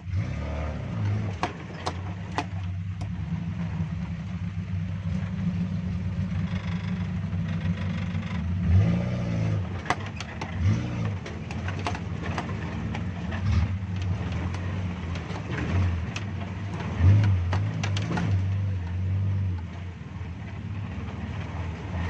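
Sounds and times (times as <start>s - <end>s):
car engine running and revving: 0.0s - 22.0s
knocks and clunks on rocks: 0.9s - 3.2s, 9.7s - 19.7s.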